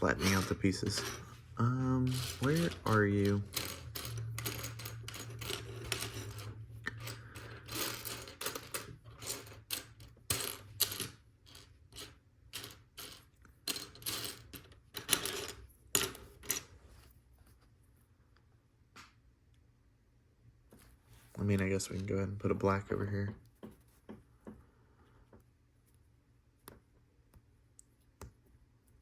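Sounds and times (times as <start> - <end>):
plastic pieces clattering: 2.0 - 16.7.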